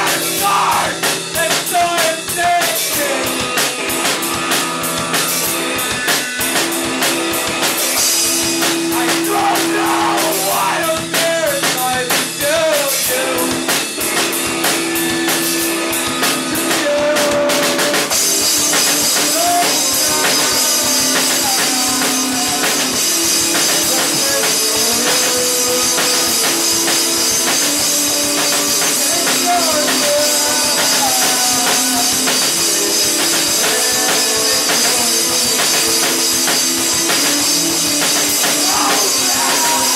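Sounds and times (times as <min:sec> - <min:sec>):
person singing: 0:00.0 - 0:03.4, 0:08.9 - 0:13.7, 0:16.2 - 0:39.9
drum kit: 0:00.0 - 0:39.9
guitar: 0:00.0 - 0:39.9.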